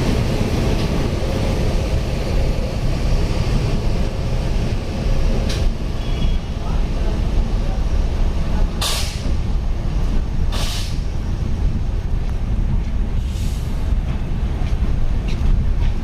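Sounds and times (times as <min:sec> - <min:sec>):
train rumbling: 0:00.0 - 0:16.0
air brake hisses: 0:08.8 - 0:09.3, 0:10.5 - 0:11.0, 0:13.2 - 0:13.8.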